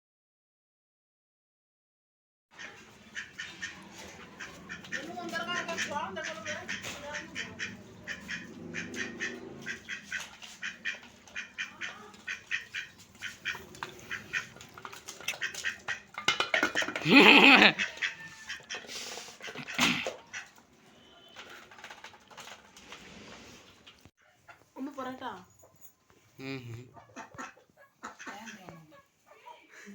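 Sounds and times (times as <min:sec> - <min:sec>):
animal calls: 0:02.6 - 0:16.1, 0:16.8 - 0:21.7.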